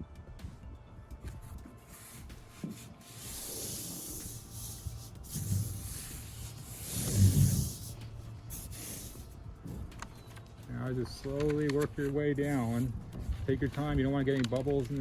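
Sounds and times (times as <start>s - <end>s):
hands rubbing foam pad: 1.3s - 9.4s
hissing scrape of peeling backing: 1.8s - 9.3s.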